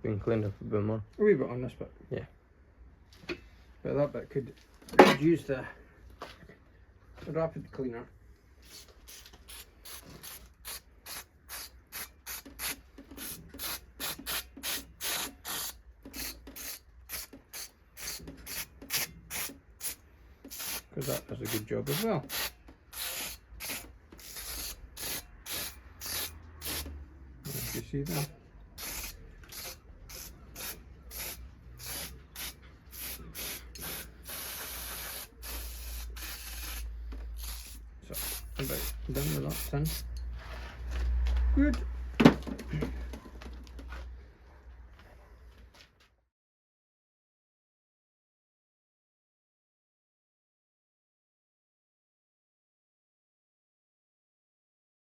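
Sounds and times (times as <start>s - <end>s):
short hissing strokes: 22.3s - 40.1s.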